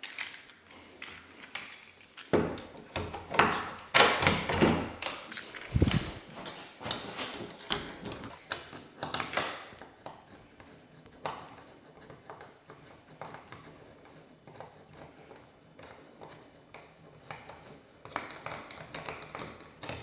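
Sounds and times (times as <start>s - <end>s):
screwdriver being handled: 5.3s - 6.3s.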